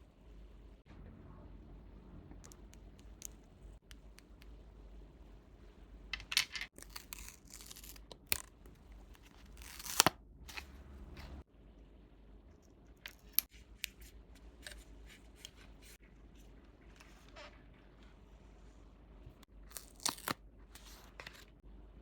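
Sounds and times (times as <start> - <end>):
wrapping tearing: 6.8 - 8.5, 19.7 - 20.4.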